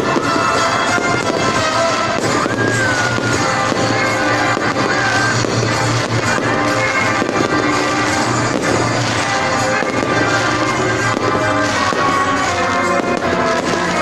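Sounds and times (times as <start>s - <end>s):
fireworks bangs: 0.0s - 14.0s
loud music with sliding melody: 0.0s - 14.0s.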